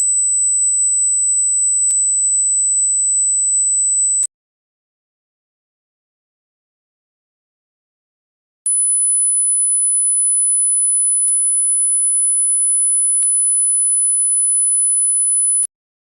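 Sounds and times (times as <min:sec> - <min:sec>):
high-pitched sine tone: 0:00.0 - 0:04.3, 0:08.7 - 0:15.7.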